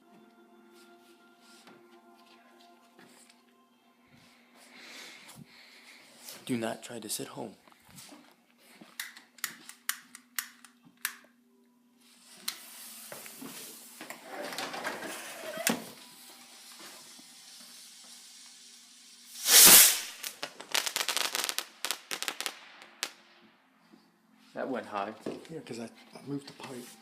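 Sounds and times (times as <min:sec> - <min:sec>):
firework fuse hissing: 0:12.1 - 0:14.3, 0:15.1 - 0:23.2
firework launch bang: 0:19.3 - 0:23.2
sharp firework pops: 0:19.3 - 0:23.2.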